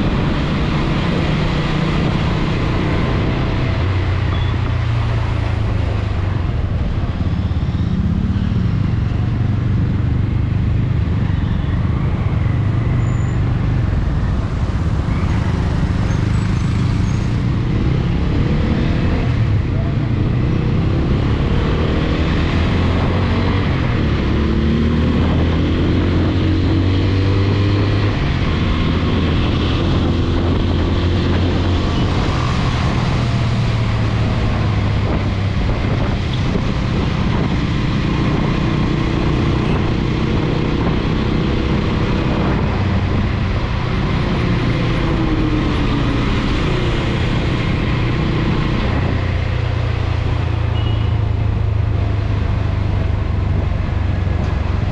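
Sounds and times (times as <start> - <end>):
motorcycle engine revving: 0.0 - 54.9
wind noise on microphone: 0.0 - 54.9.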